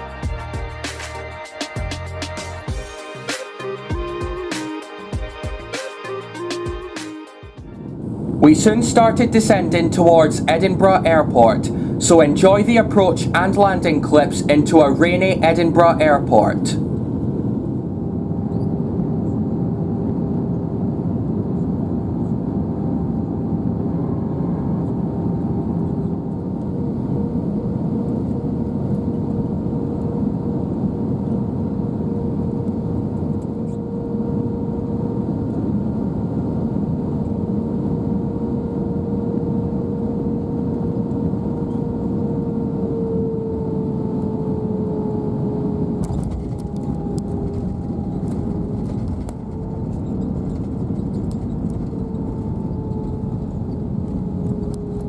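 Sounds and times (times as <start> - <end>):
airplane cabin airflow and engine: 0.0 - 55.0
engine tones shifting pitch: 23.5 - 55.0.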